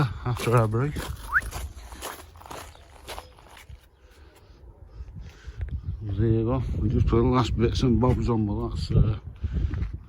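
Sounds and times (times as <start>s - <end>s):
soft footsteps: 0.3s - 4.4s.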